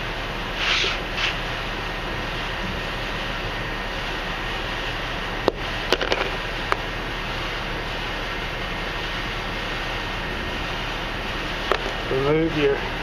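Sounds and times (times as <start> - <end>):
steady fan-like hiss: 0.0 - 13.0.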